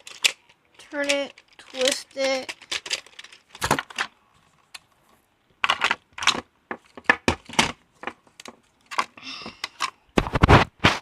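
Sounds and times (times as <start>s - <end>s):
plastic game blocks clicking: 0.0s - 4.1s.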